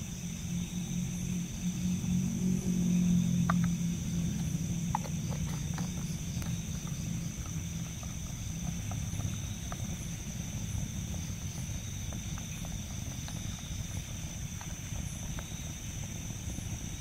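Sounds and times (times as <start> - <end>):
forest insects droning: 0.0 - 17.0
wood fire crackling: 3.8 - 17.0.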